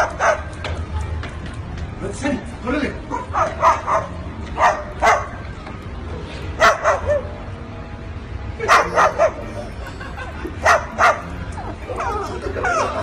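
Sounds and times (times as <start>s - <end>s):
parrot imitating dog barks: 8.7s - 9.6s.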